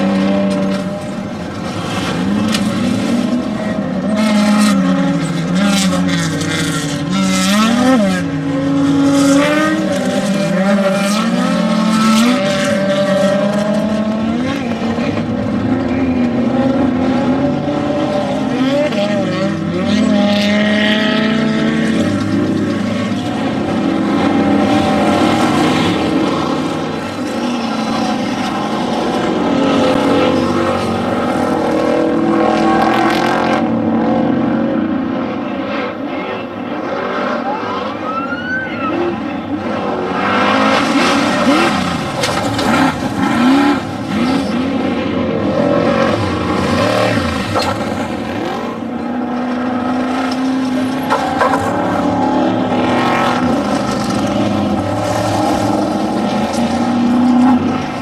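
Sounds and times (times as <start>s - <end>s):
race vehicle engines revving: 0.0s - 58.0s.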